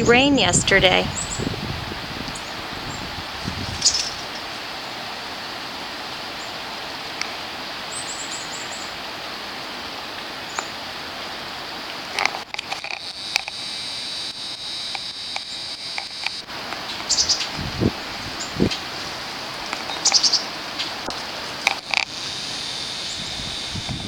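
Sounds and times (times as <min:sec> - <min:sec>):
river water rushing: 0:04.1 - 0:14.3, 0:16.3 - 0:24.0
sharp knocks and crackles: 0:12.2 - 0:17.1, 0:21.0 - 0:22.6
high bird chirps: 0:19.9 - 0:20.4.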